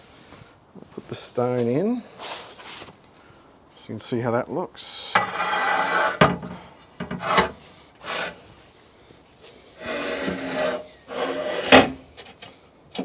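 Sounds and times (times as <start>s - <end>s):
stone scraping over oven floor: 5.2s - 8.4s, 9.8s - 12.0s.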